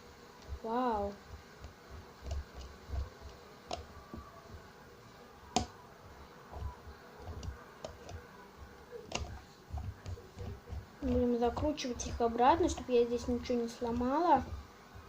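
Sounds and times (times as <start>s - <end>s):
dull handling bumps: 6.5s - 15.0s.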